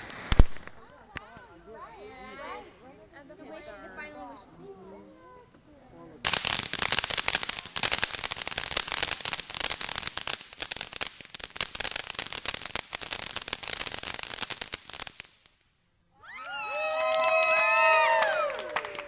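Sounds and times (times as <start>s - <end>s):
fireworks crackling: 0.0s - 1.5s, 5.4s - 15.9s.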